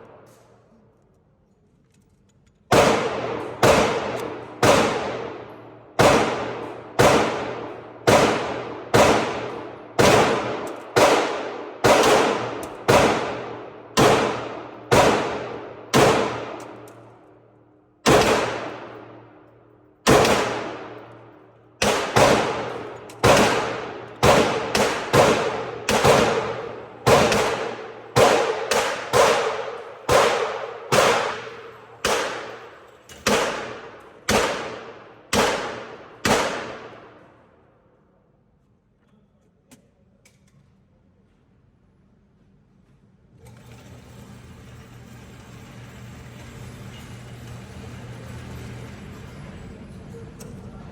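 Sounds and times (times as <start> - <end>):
pistol shots echoing: 2.7 - 17.4, 18.0 - 37.4.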